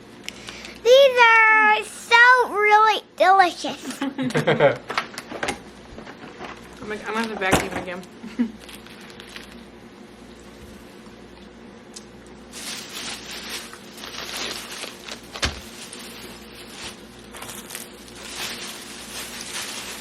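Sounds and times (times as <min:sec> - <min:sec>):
snack packaging crinkling: 0:08.5 - 0:09.7, 0:12.5 - 0:20.0.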